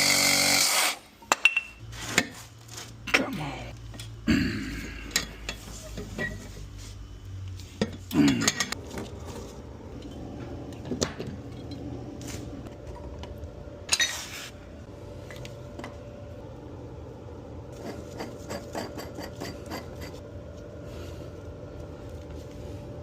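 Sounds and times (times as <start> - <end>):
steady hum: 1.0 - 23.0
hand tools clanking on metal pipes: 7.8 - 8.8.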